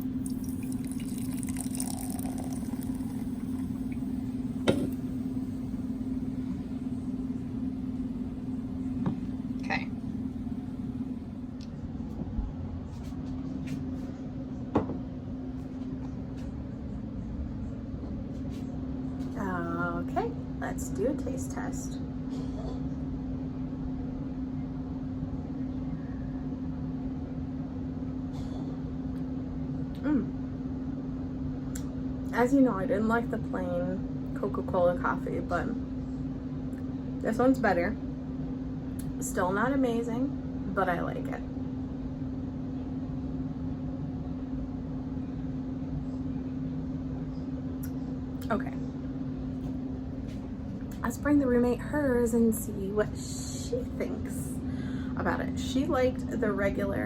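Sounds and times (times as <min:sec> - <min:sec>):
drink fizzing in a glass: 0:00.0 - 0:05.6
steady low hum: 0:00.0 - 0:57.0.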